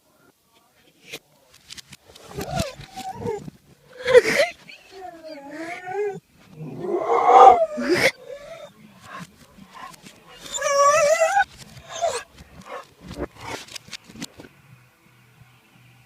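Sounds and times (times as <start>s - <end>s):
reversed dog vocal noises: 1.9s - 14.4s.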